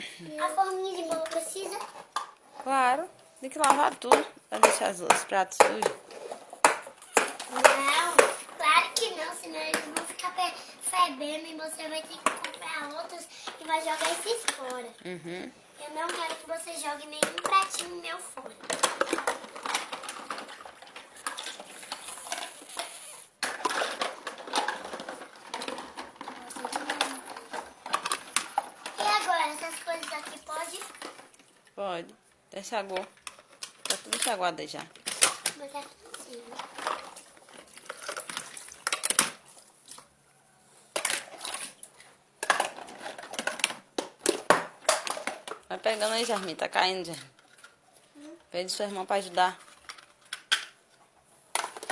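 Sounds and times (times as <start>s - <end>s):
toy dishes clinking and clattering: 0.9s - 10.4s, 16.0s - 31.3s, 33.1s - 39.4s, 42.4s - 47.8s.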